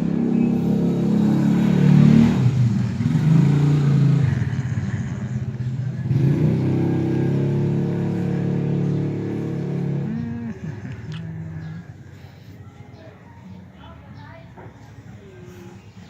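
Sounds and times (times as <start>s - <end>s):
engine revving up and down: 0.0s - 12.2s.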